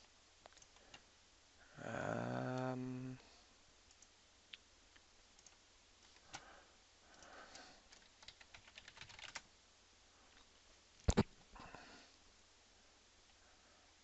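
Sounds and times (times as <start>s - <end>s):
sharp clicks: 5.4s - 6.4s
keyboard typing: 7.1s - 9.4s.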